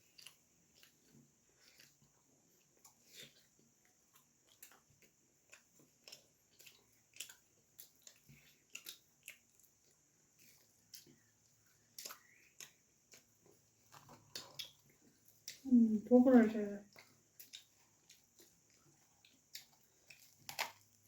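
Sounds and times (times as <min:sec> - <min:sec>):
wet chewing mouth smacks: 0:04.1 - 0:09.8, 0:10.4 - 0:15.6.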